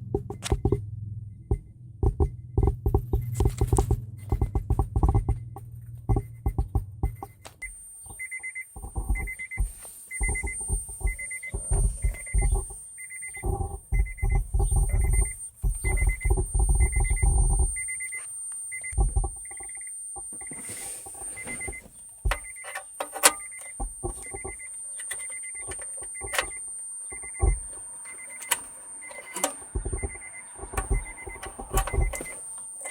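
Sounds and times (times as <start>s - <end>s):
low bass thumps: 0.0s - 7.4s, 10.2s - 12.8s, 13.4s - 17.9s, 29.8s - 32.2s
subwoofer crackling and pops: 0.0s - 20.4s, 23.7s - 28.0s, 29.5s - 32.4s
high electronic beep: 1.4s - 32.9s.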